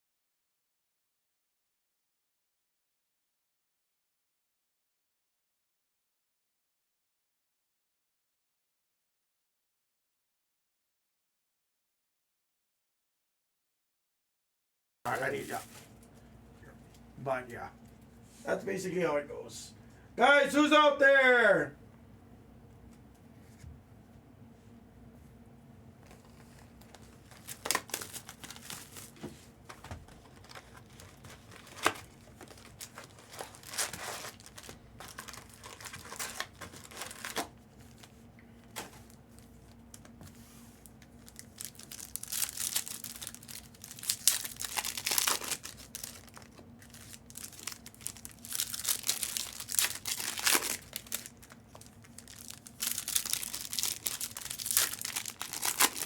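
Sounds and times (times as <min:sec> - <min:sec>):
plastic packaging crinkling: 0:15.1 - 0:16.1, 0:26.0 - 0:40.2, 0:40.8 - 0:56.0
faint steady hum: 0:15.1 - 0:56.0.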